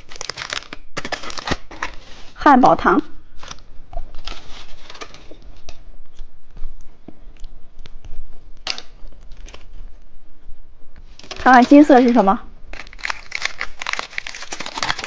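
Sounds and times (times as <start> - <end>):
plastic packaging crinkling: 0.0 - 2.2, 8.6 - 9.9, 11.1 - 15.0.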